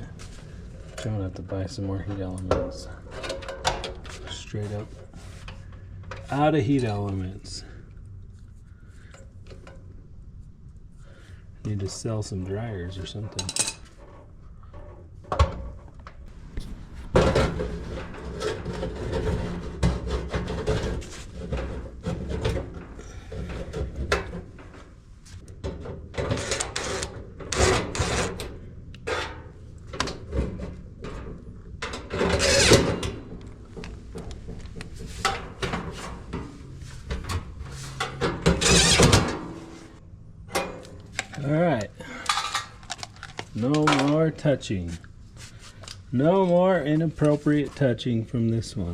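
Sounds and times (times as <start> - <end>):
metal clanking: 25.6 - 44.3
metal parts clinking and rattling: 38.0 - 39.5, 40.5 - 44.2.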